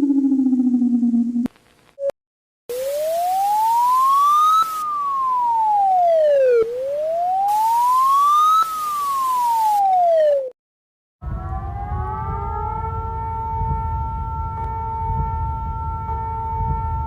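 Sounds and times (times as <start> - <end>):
electronic wail siren: 0.0 - 1.5, 2.7 - 10.6, 11.2 - 17.0
hiss: 7.5 - 9.8.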